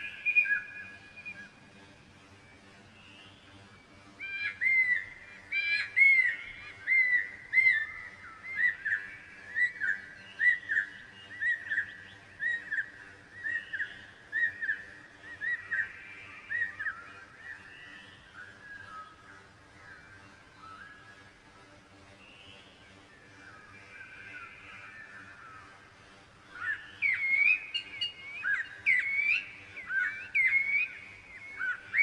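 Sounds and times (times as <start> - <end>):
songbird whistling: 0.0 - 1.5, 4.2 - 17.2, 26.5 - 32.0.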